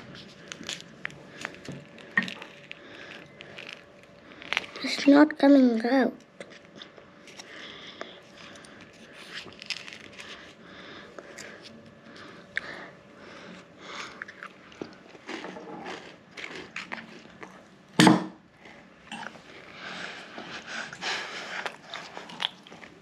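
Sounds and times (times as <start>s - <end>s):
crinkly rustles: 0.0s - 5.7s, 6.5s - 12.3s.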